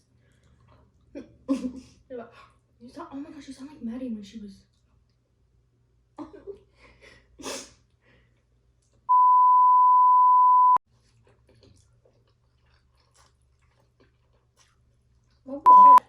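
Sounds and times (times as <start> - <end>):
censor bleep: 9.1 - 10.8, 15.7 - 16.0
mouth and chewing sounds: 10.9 - 15.7.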